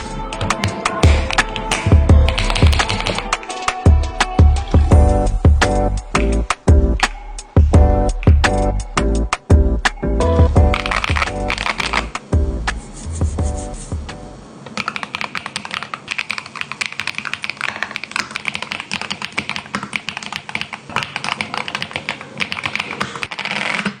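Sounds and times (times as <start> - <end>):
background music: 0.0 - 14.6
fast typing on mechanical keyboard: 2.2 - 3.3, 14.8 - 24.0.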